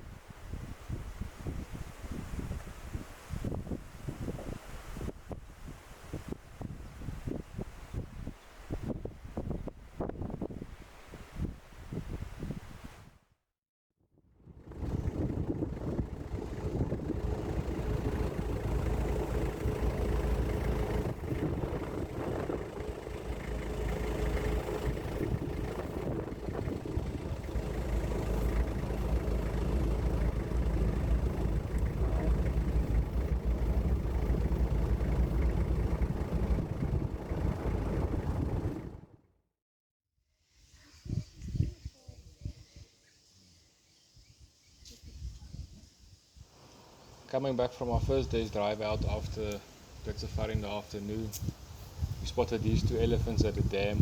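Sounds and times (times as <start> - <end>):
car engine and road rumble: 14.6 - 39.2
faint steady hum: 14.8 - 38.8.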